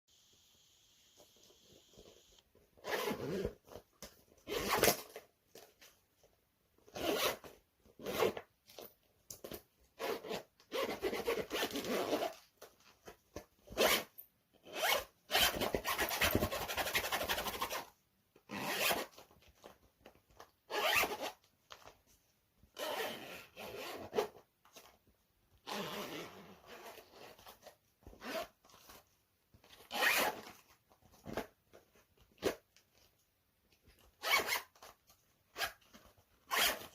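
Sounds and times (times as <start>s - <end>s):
clothing zipper rasping: 1.8s - 3.6s, 4.4s - 5.0s, 6.9s - 7.4s, 8.0s - 8.4s, 10.0s - 12.4s, 13.8s - 17.9s, 18.5s - 19.1s, 20.7s - 21.4s, 22.8s - 24.4s, 25.6s - 27.6s, 28.2s - 28.6s, 29.8s - 30.6s, 34.2s - 34.7s, 36.4s - 36.9s.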